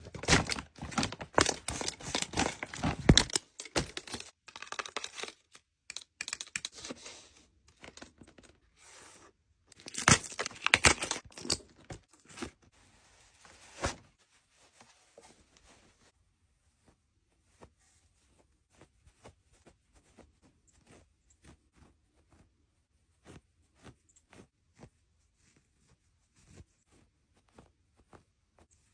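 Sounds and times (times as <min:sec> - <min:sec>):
packaging tearing and crinkling: 0:09.8 - 0:11.8.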